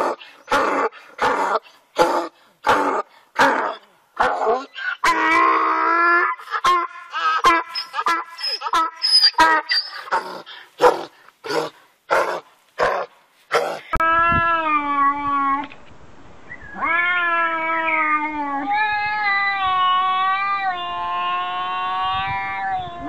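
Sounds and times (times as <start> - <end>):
animal wailing calls: 4.8 - 10.2.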